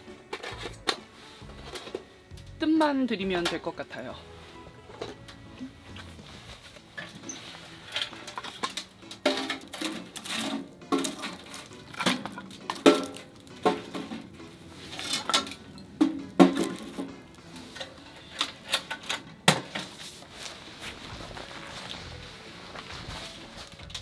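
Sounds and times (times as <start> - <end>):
cookware clinking: 7.0 - 19.9.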